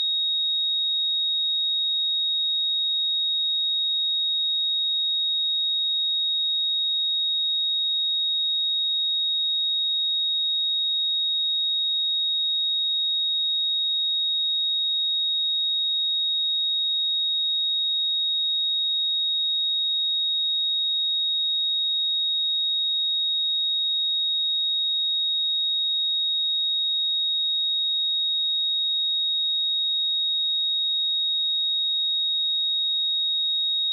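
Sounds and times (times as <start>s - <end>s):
high-pitched sine-wave test tone: 22.6s - 33.9s.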